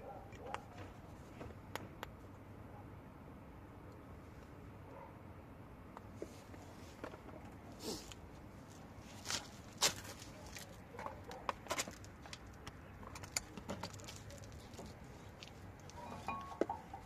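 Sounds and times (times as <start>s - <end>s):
hand tools and metal parts clicking: 9.9s - 17.0s.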